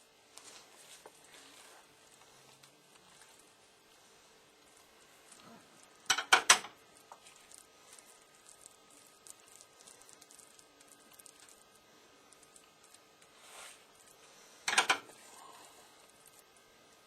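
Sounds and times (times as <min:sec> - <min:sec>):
spoon clicking and scraping: 0:05.8 - 0:07.6
spoon knocking against bowl: 0:06.1 - 0:06.7.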